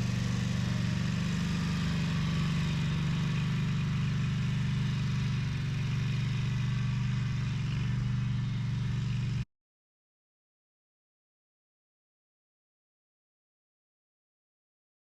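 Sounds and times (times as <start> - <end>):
mower engine running: 0.0 - 9.4.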